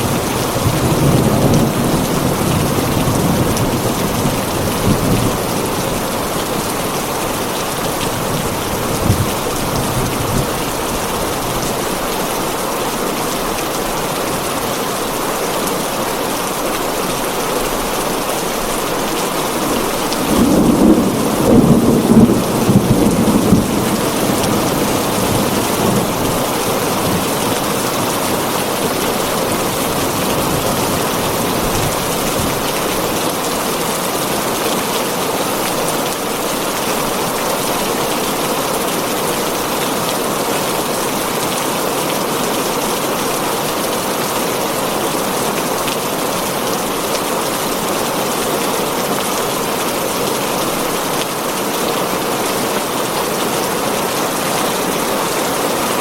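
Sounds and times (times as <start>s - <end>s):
heavy rain on a tin roof: 0.0s - 56.0s
thunder rumble: 19.3s - 28.6s.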